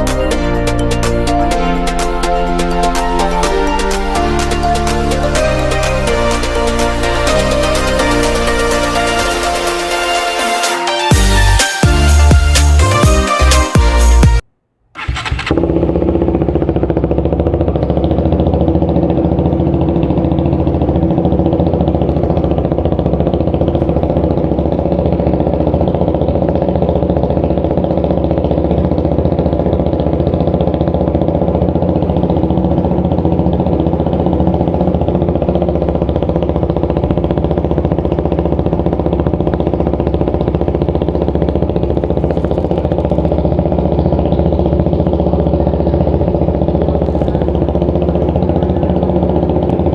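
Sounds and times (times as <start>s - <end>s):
motorcycle engine idling: 14.6s - 49.9s.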